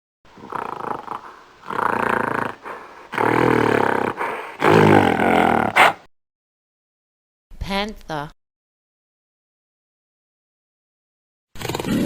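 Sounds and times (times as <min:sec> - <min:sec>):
gorilla calling: 0:00.4 - 0:06.0.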